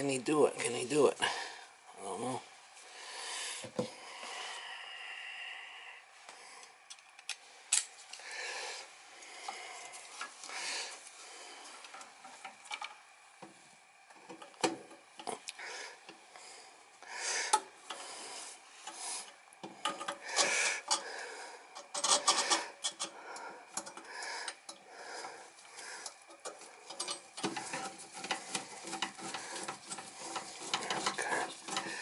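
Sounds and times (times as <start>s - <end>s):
metal parts scraping and clinking: 21.8s - 23.1s, 26.3s - 32.0s.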